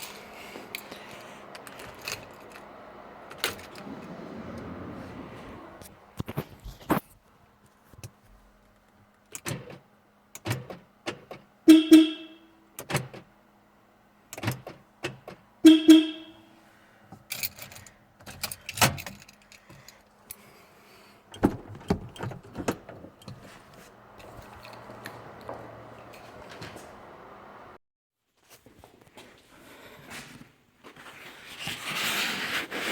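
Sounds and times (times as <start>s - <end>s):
car horn alarm chirps: 11.7s - 12.6s, 15.6s - 16.6s.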